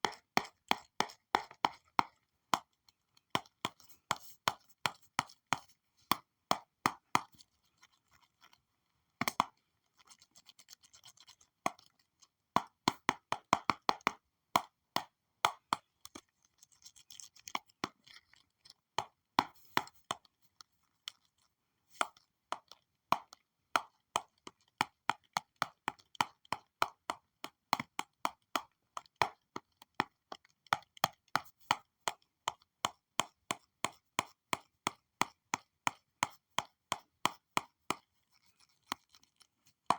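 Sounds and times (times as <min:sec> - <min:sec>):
stylus tapping on tablet: 0:00.0 - 0:02.8, 0:03.4 - 0:07.4, 0:09.2 - 0:09.5, 0:12.6 - 0:16.2, 0:30.7 - 0:38.0.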